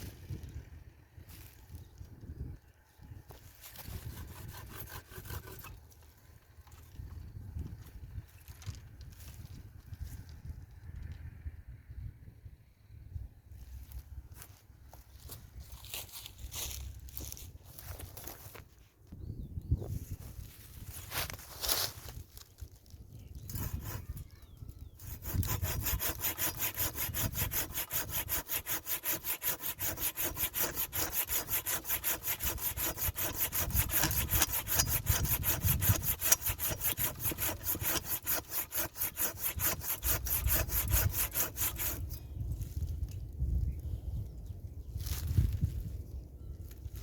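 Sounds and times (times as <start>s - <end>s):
hand saw cutting wood: 3.7s - 5.8s, 23.4s - 24.2s, 25.0s - 42.2s.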